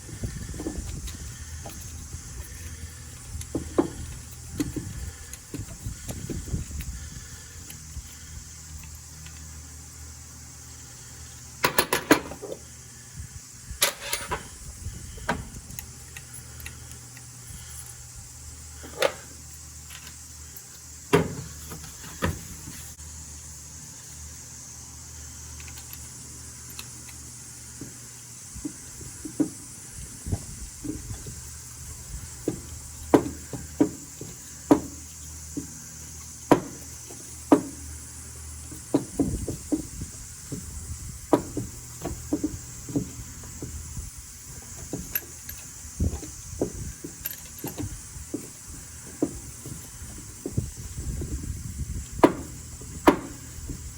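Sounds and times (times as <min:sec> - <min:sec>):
steady low hum: 0:00.0 - 0:53.9.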